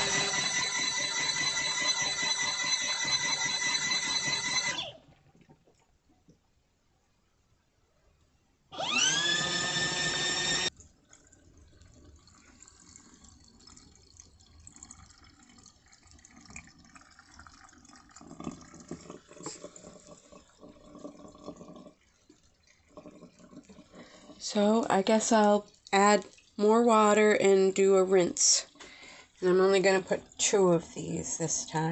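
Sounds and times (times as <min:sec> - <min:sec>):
washing machine motor whirring: 0:00.0 - 0:05.2, 0:08.7 - 0:15.6
water sloshing in tub: 0:10.7 - 0:31.9.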